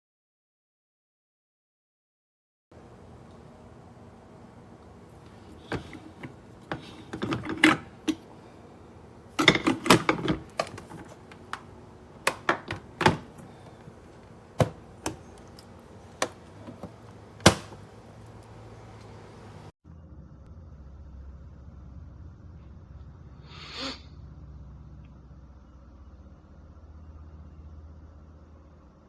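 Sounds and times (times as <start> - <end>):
clatter of things being handled: 5.2 - 8.5, 9.3 - 18.4.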